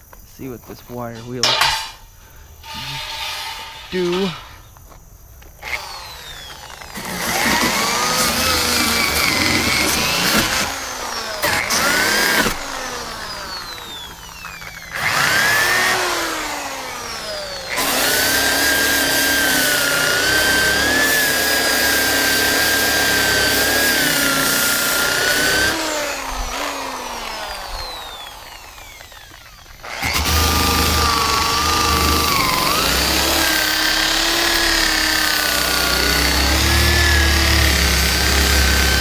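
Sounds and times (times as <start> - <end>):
wire wheel scrubbing rust from metal: 1.1 - 4.9.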